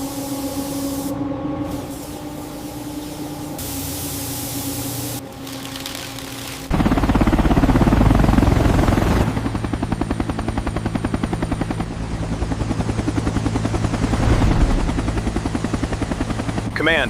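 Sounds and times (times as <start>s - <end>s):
helicopter rotor blades chopping: 6.7s - 17.0s
rushing noise: 13.9s - 15.8s.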